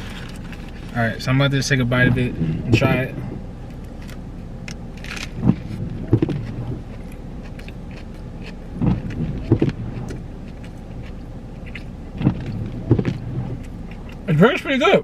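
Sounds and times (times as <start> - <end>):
soft bumps: 0.0 - 14.3
car low hum: 0.0 - 15.0
person biting and chewing: 5.0 - 14.3.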